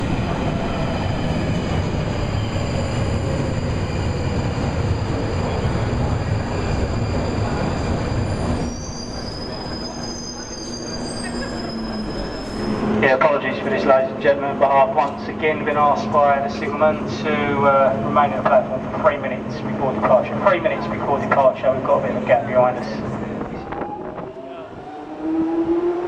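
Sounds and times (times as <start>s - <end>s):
train rumbling: 0.0s - 26.0s
train wheels squealing: 0.4s - 13.4s.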